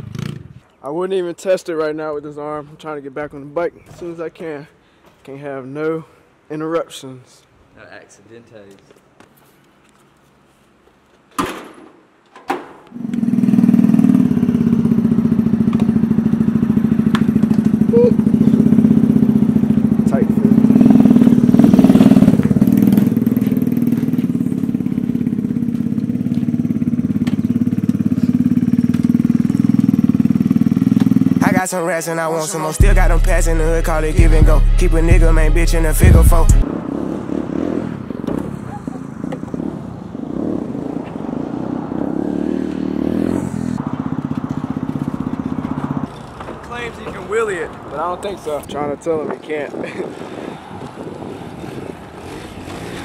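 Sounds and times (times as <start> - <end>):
small motorbike engine idling: 13.0 - 21.6, 22.3 - 31.4
pit bike engine revving: 13.0 - 31.6, 32.8 - 47.2, 49.8 - 53.0.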